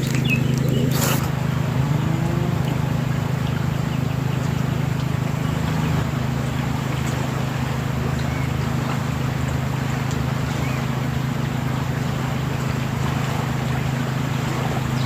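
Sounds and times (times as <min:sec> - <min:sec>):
small engine humming: 0:00.0 - 0:15.0.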